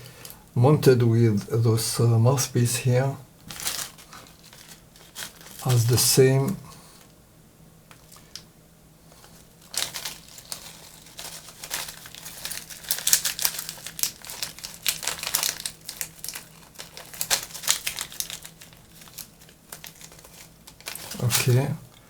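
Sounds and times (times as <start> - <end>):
plastic connectors rustling and clicking: 3.4 - 5.8, 7.9 - 8.5, 9.1 - 22.0.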